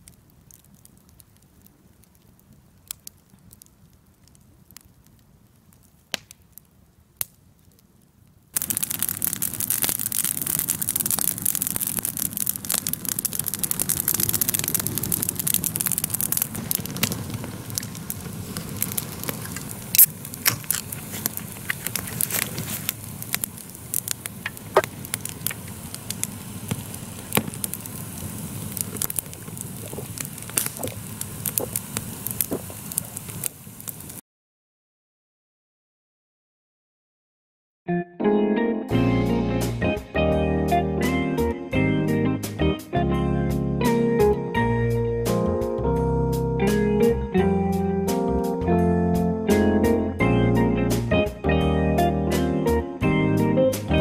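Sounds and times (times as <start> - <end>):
campfire crackling and popping: 0.0 - 34.2.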